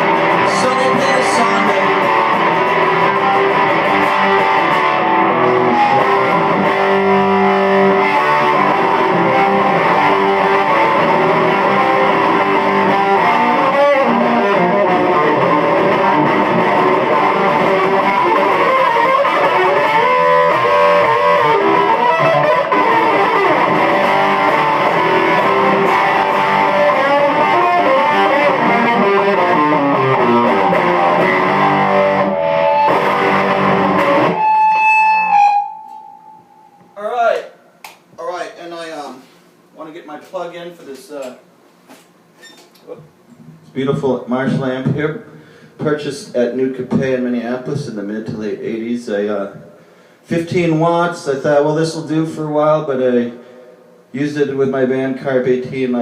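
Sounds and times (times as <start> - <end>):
electric guitar playing: 0.0 - 37.0.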